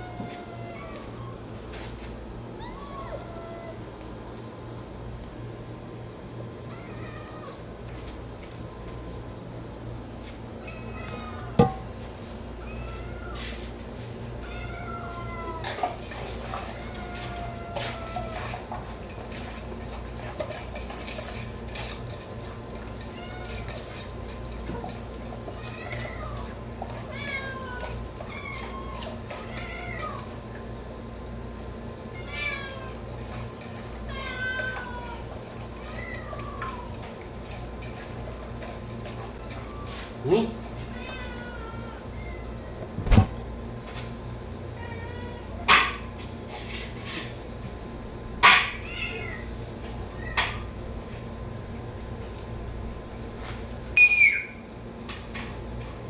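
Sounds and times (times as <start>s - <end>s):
cat meowing: 0.0s - 1.4s, 2.5s - 4.0s, 6.7s - 7.7s, 14.4s - 15.8s, 32.2s - 33.0s, 39.6s - 43.2s, 48.8s - 49.5s
cats meowing: 0.0s - 4.3s, 6.6s - 8.1s, 10.6s - 19.0s, 22.2s - 43.3s, 44.6s - 46.1s, 48.4s - 51.4s.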